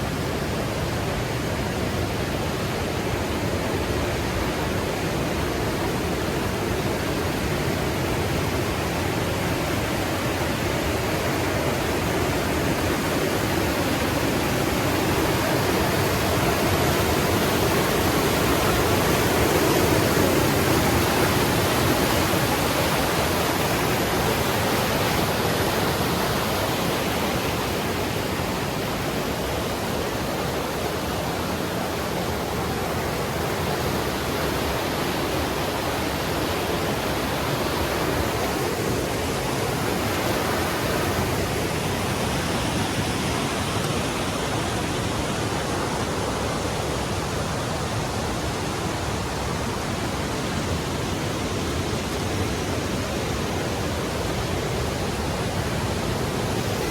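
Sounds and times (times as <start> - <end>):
water rushing over rocks: 0.0 - 56.9.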